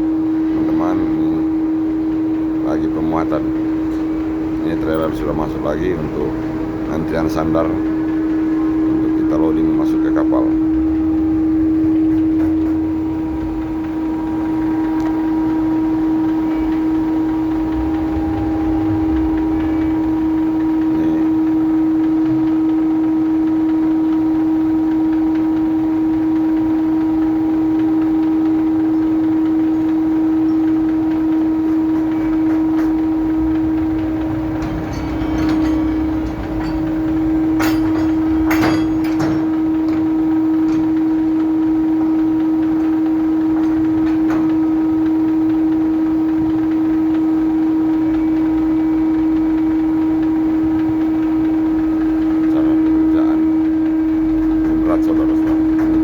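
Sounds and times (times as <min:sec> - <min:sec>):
loud machinery hum: 0:00.0 - 0:56.0
sharp metallic knocks: 0:03.1 - 0:23.6, 0:30.5 - 0:41.6, 0:53.9 - 0:56.0.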